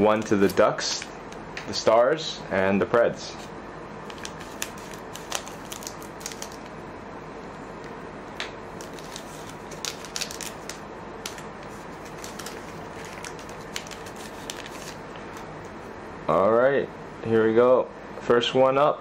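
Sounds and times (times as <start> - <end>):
steady low hum: 0.0 - 19.0
cards being handled: 4.1 - 6.7, 8.4 - 15.5
foil wrapper crinkling: 4.1 - 6.7, 8.8 - 15.4.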